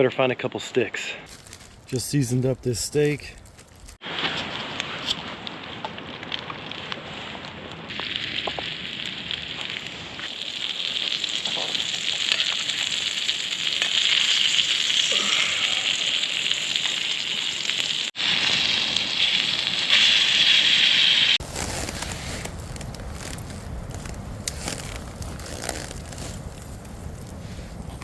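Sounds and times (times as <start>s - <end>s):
campfire crackling and popping: 1.3s - 4.0s, 7.9s - 15.1s, 21.4s - 28.0s.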